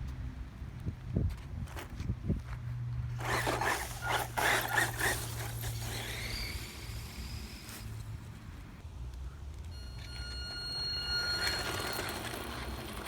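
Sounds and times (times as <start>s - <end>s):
high motor whine: 3.1s - 8.8s, 9.6s - 13.0s
rc car scrabbling: 3.2s - 8.2s, 10.8s - 13.0s.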